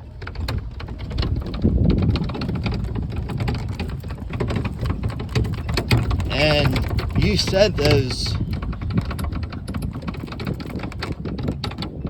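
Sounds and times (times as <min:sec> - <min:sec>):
golf cart rattling and knocking: 0:00.0 - 0:12.0.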